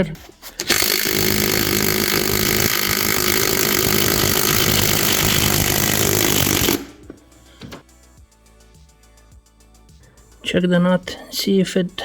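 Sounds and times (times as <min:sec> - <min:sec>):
power tool undoing a nut: 0:00.6 - 0:07.8.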